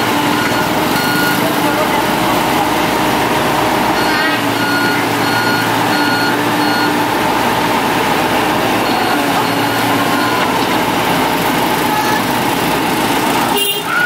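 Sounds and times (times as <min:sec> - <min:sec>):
diesel machinery running: 0:00.0 - 0:14.0
electronic warning beeper: 0:00.4 - 0:01.5, 0:04.0 - 0:07.0, 0:08.8 - 0:10.6.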